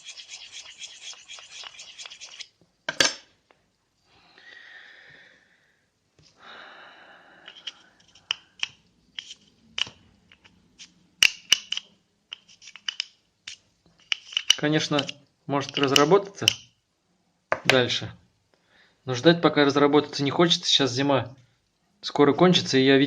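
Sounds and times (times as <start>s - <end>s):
needle file scraping plastic: 0.0s - 2.5s.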